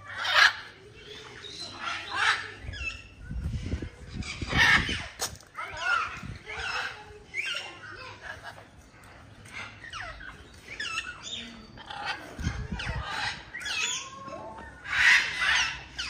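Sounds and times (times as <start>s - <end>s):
birds calling: 0.0s - 16.0s.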